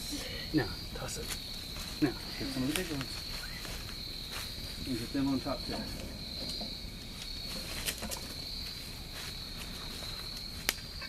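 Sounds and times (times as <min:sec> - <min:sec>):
insects chirring: 0:00.0 - 0:11.0
sharp snaps: 0:10.4 - 0:10.9.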